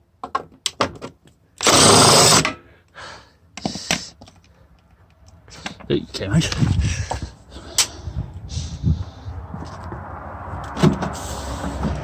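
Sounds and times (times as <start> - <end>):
impact driver burst: 1.6 - 2.6.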